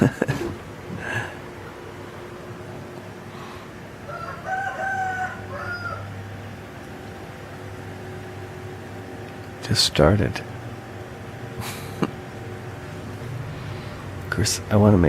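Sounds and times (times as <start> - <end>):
rooster crowing: 4.0 - 6.4.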